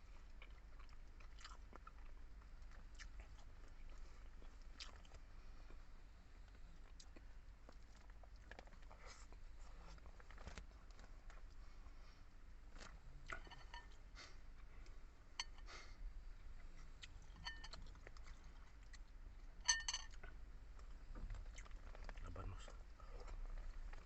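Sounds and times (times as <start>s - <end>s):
person chewing food: 0.2s - 15.9s, 16.6s - 24.0s
cutlery clinking on dish: 13.4s - 13.9s, 17.4s - 17.8s, 19.6s - 20.2s.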